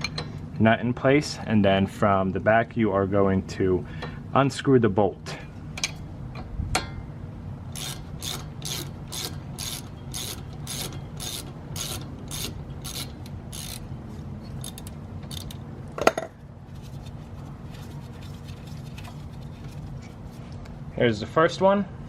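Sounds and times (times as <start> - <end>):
ratchet wrench clicking: 7.7 - 15.6.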